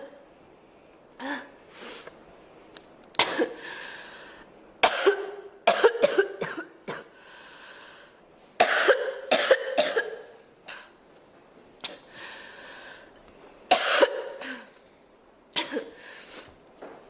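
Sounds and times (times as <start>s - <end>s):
girl coughing: 3.2s - 3.6s, 4.8s - 7.2s, 8.6s - 10.9s, 13.7s - 14.7s, 15.6s - 16.0s.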